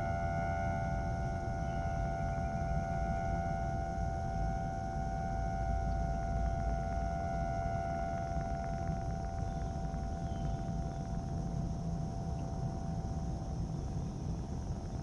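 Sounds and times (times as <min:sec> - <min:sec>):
steady instrument drone note: 0:00.0 - 0:14.2.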